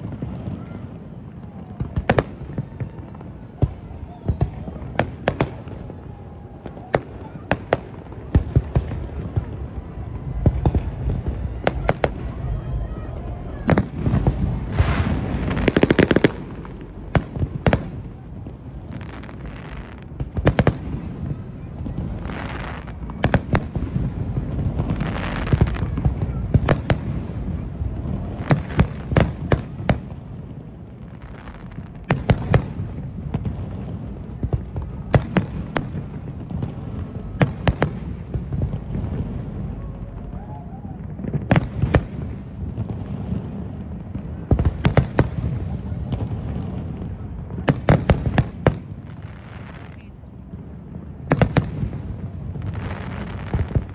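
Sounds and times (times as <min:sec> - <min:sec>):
low rumble: 0:00.0 - 0:19.0
fireworks hissing: 0:00.0 - 0:40.4
fireworks banging: 0:00.0 - 0:53.9.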